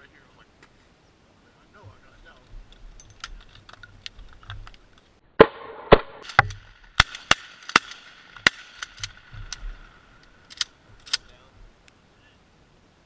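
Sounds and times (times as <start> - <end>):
shotgun shots: 5.4 - 11.3.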